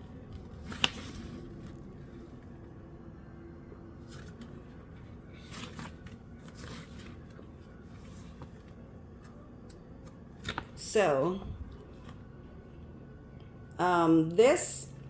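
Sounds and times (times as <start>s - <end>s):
paper rustling: 0.3s - 2.2s, 4.0s - 9.4s.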